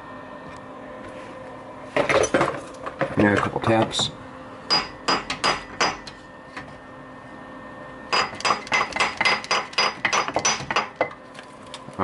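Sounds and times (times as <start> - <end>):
hammer tapping on metal: 4.7 - 6.2, 8.1 - 11.1.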